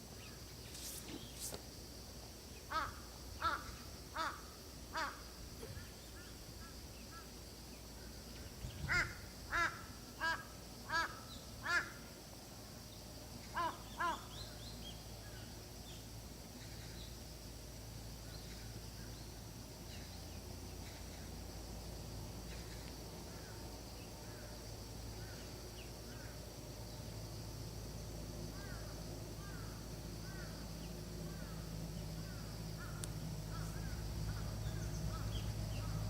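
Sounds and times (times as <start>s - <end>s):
high-pitched background hiss: 0.0s - 36.0s
crow cawing: 2.7s - 5.2s, 8.9s - 12.0s, 13.6s - 14.2s, 29.4s - 30.5s.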